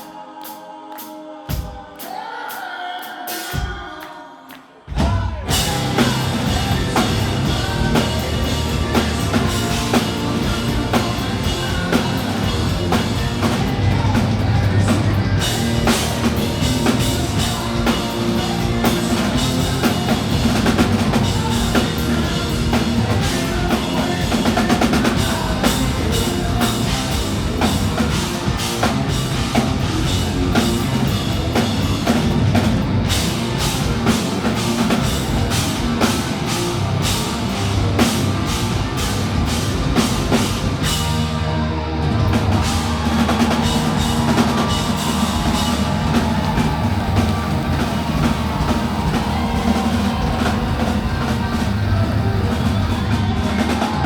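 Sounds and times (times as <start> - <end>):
live rock band playing: 5.5 - 54.0.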